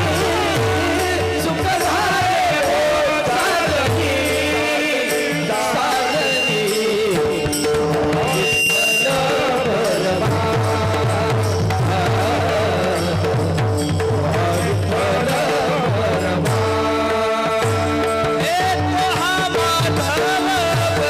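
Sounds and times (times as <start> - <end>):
steady held tones: 0.0 - 14.2.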